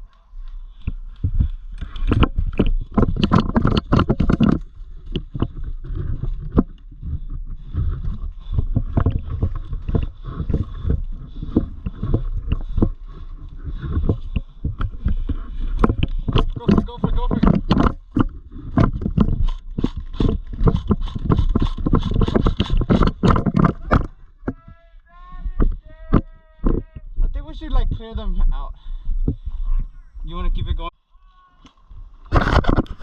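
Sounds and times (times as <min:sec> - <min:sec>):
gear knocking and rustling: 0:00.0 - 0:24.6, 0:31.9 - 0:33.0.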